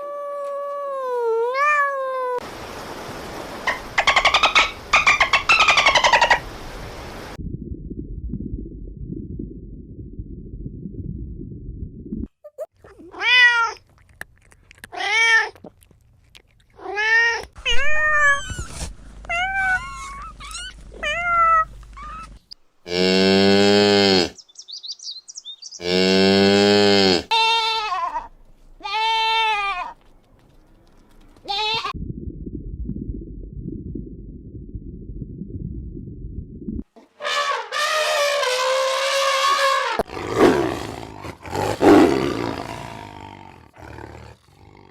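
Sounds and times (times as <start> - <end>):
cat meowing: 0.0 - 2.4, 12.9 - 13.9, 16.8 - 22.3, 27.3 - 30.0
low rumbling noise: 6.5 - 12.3, 17.6 - 22.4, 32.0 - 36.9.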